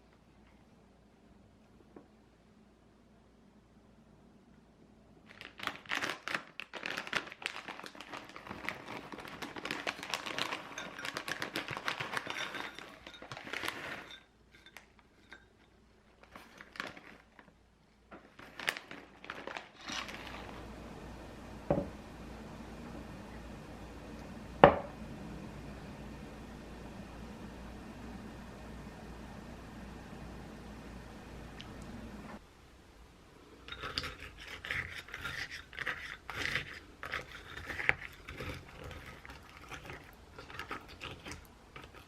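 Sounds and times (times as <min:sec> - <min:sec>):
packaging crinkling and rustling: 0:05.2 - 0:15.2, 0:16.0 - 0:20.7.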